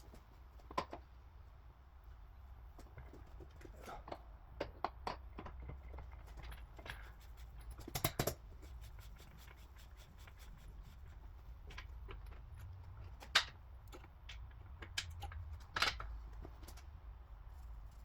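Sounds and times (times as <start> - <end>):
metal tools clicking and tapping: 7.8 - 8.4.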